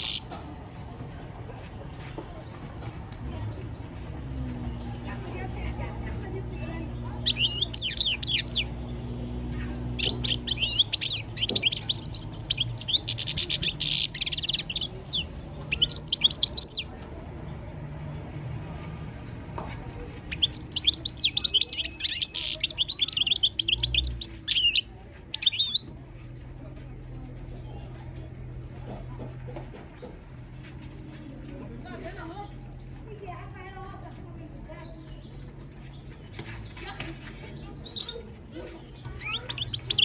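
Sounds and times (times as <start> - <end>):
goldfinch twittering song: 0.0 - 0.3, 7.2 - 9.0, 10.0 - 16.9, 20.3 - 25.8, 39.0 - 40.0.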